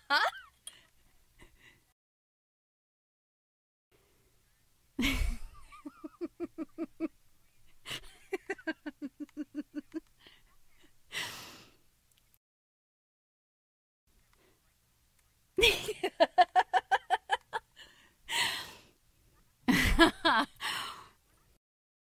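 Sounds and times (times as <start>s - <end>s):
woman laughing: 0.0s - 0.6s, 5.0s - 7.1s, 7.8s - 10.3s, 15.6s - 18.6s, 19.7s - 21.0s
sharp gasping breath: 11.1s - 11.8s, 17.8s - 19.0s.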